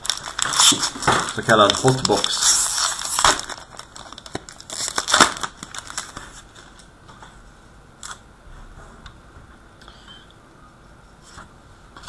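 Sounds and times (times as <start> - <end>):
cards clicking and rustling: 0.0 - 6.2
wrapper crinkling: 0.0 - 6.9.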